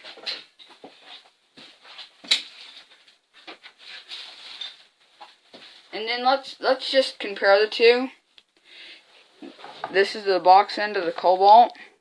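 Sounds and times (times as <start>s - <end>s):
hand tools rustling and clicking: 2.2s - 4.9s.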